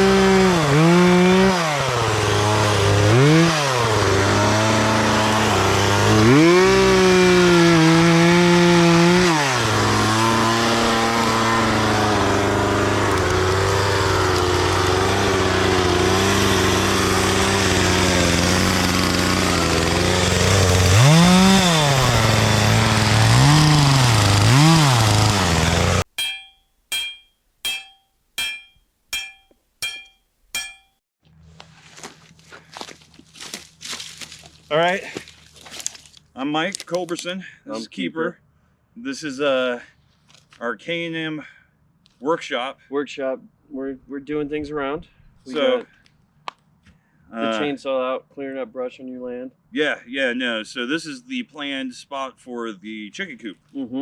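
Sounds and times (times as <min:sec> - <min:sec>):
chainsaw revving: 0:00.0 - 0:26.1.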